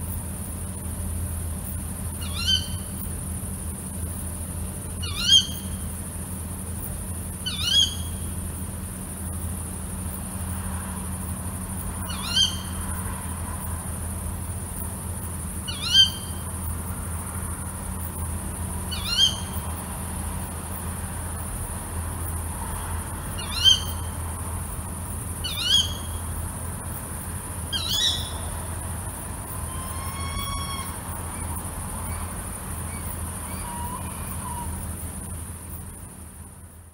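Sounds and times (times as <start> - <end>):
owl contact call shrieks: 27.8 - 28.5, 29.6 - 34.8.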